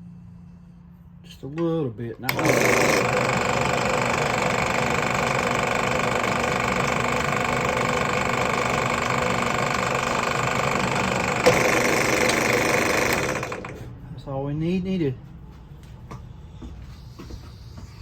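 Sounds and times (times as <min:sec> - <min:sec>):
drill press drilling into wood: 0:02.2 - 0:13.9.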